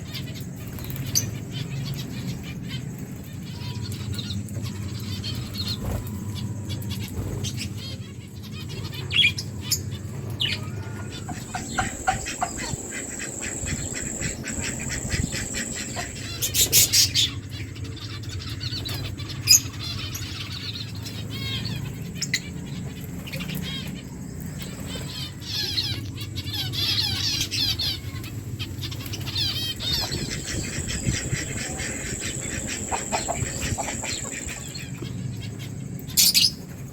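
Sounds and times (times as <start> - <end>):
lovebirds chattering: 3.6 - 36.9
low steady hum: 9.8 - 17.8, 29.3 - 36.9
birds pecking at food: 10.3 - 17.0, 29.1 - 35.1.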